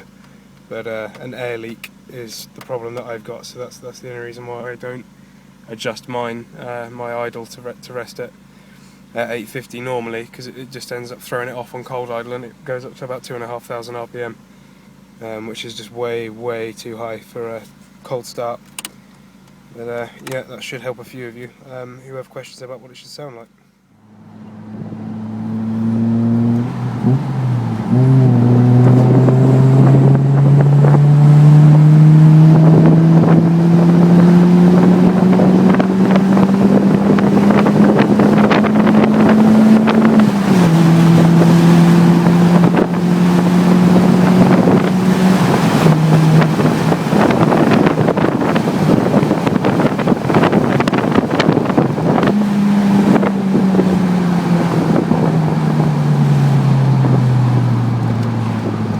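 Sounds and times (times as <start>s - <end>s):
car engine revving: 23.9s - 58.9s
wind rushing: 24.4s - 58.0s.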